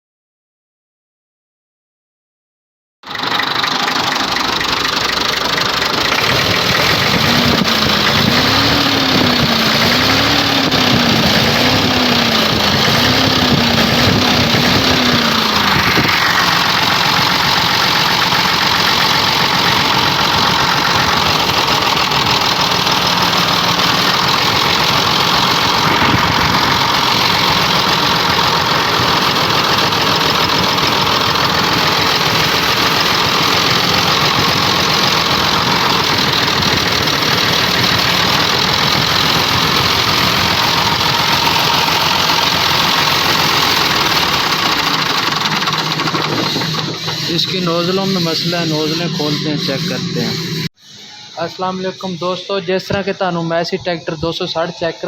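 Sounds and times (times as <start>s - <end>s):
diesel tractor engine knocking: 3.0s - 50.7s.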